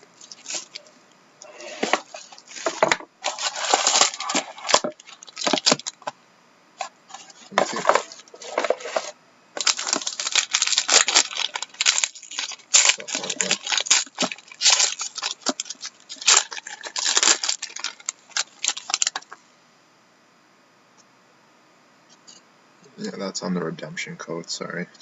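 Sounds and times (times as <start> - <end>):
card pack wrapper crinkling: 0.0 - 0.9, 1.5 - 6.1, 7.1 - 19.4.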